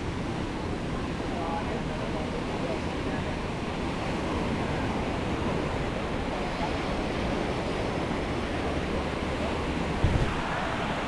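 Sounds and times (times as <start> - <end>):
small waves washing on beach: 0.0 - 11.0.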